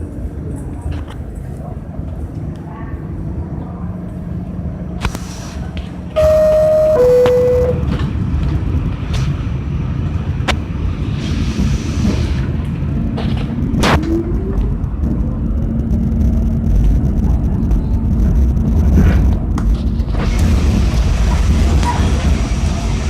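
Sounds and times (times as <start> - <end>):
low rumble of subway car: 0.0 - 23.0
descending two-tone door chime: 6.2 - 8.0.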